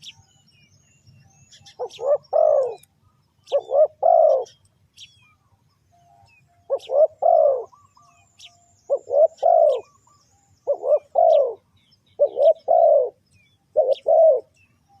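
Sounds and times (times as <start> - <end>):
small birds chirping: 0.0 - 15.0
dove cooing: 1.6 - 2.9, 3.5 - 4.6, 6.6 - 8.2, 8.9 - 14.6.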